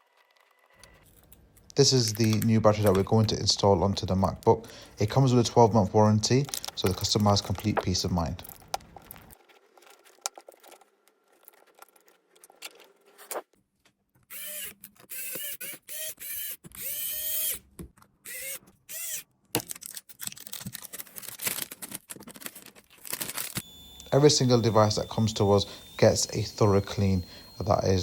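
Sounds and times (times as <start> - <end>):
electric screwdriver whirring: 14.3 - 17.6, 18.2 - 19.2, 23.4 - 28.0.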